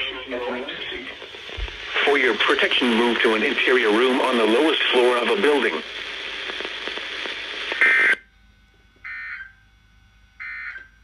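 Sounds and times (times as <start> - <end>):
radio hiss with crackle: 0.0 - 8.2
faint hum: 0.0 - 11.0.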